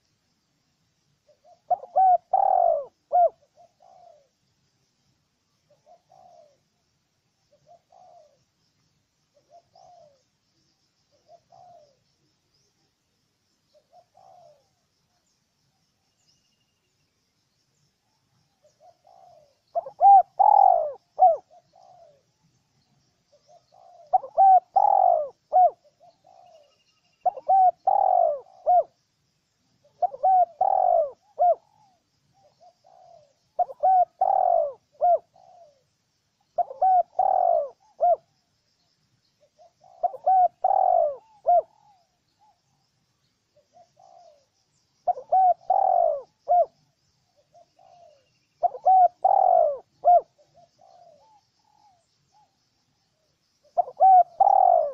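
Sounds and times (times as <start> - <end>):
dove cooing: 1.3 - 4.4, 5.7 - 6.7, 7.5 - 8.4, 9.3 - 10.3, 11.1 - 12.0, 13.7 - 14.8, 18.6 - 22.3, 23.3 - 29.0, 29.8 - 35.9, 36.5 - 38.4, 39.5 - 42.8, 43.6 - 52.6, 53.7 - 54.9.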